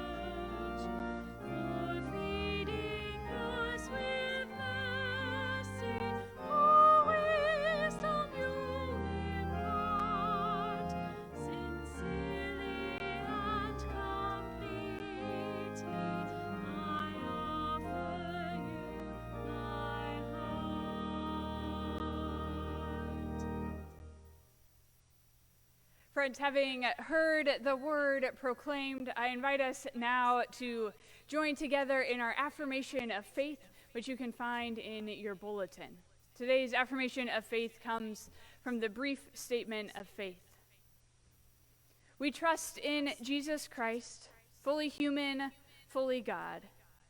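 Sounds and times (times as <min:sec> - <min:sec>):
sustained low chords: 0:00.0 - 0:24.2
solo melody with wide vibrato: 0:00.0 - 0:24.3.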